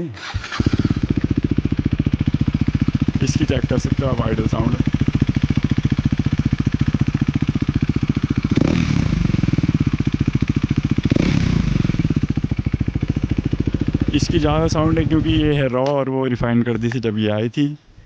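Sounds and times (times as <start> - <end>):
motorcycle engine idling: 0.2 - 15.7
engine throttle blips: 8.4 - 15.8.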